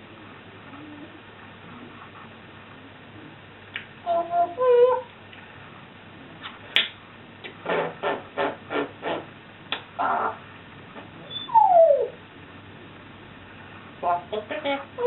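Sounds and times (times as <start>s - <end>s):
sharp click: 6.4s - 7.6s, 9.7s - 9.9s
parrot calling: 10.0s - 10.5s, 11.2s - 12.2s
parrot whistle sliding down: 11.3s - 12.2s.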